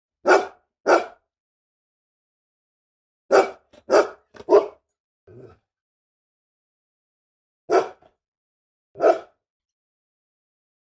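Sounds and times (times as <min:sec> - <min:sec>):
dog barking: 0:00.2 - 0:01.2, 0:03.3 - 0:05.5, 0:07.7 - 0:08.1, 0:09.0 - 0:09.4.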